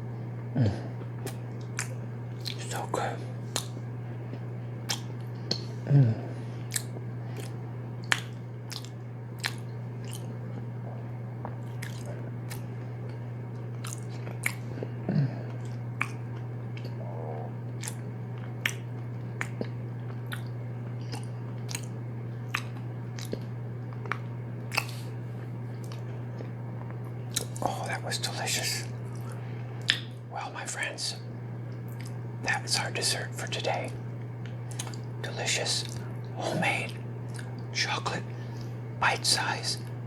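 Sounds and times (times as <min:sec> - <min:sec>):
steady low hum: 0:00.0 - 0:40.0
moist chewing mouth clicks: 0:01.2 - 0:02.9, 0:03.5 - 0:05.7, 0:06.7 - 0:10.3, 0:11.4 - 0:13.2, 0:17.8 - 0:21.9, 0:22.5 - 0:25.1, 0:34.4 - 0:35.1.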